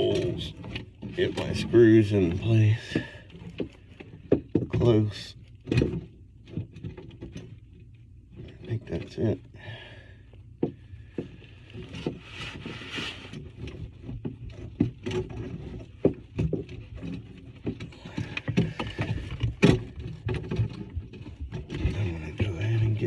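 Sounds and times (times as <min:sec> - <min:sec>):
rustling and scraping: 0:00.0 - 0:23.0
plastic parts clicking and knocking: 0:13.6 - 0:23.0.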